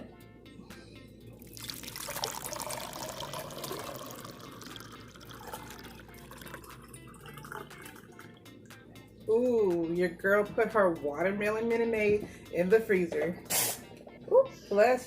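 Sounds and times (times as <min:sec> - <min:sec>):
liquid pouring into a glass: 0:01.4 - 0:08.6.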